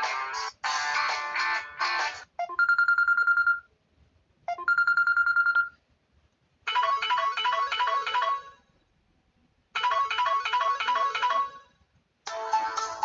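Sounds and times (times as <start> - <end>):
repeating melodic ringtone phrase: 4.5 - 5.7, 6.7 - 8.6, 9.8 - 11.6
guitar ringtone tune: 6.7 - 8.6, 9.8 - 11.7.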